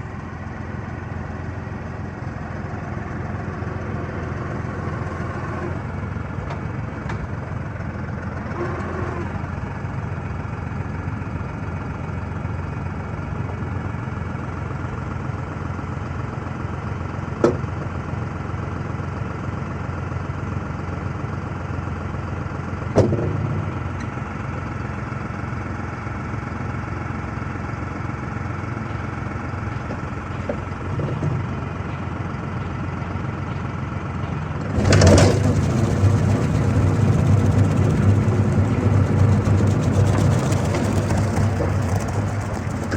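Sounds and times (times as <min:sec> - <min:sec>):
tractor engine running: 0:00.0 - 0:08.5, 0:23.6 - 0:42.9.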